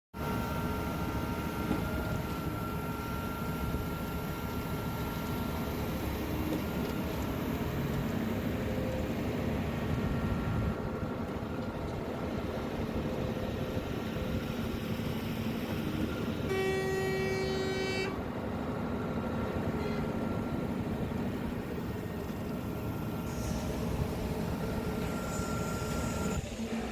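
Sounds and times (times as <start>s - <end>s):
construction machinery engines: 0.2s - 26.9s
vehicle horn: 16.5s - 18.2s.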